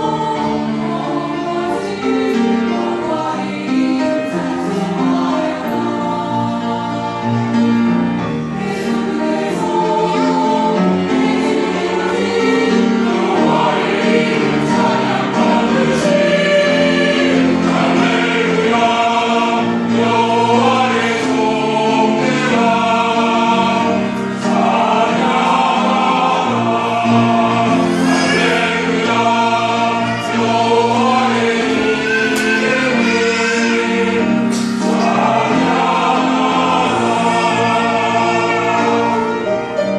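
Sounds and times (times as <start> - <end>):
choir singing a hymn: 0.0 - 39.9.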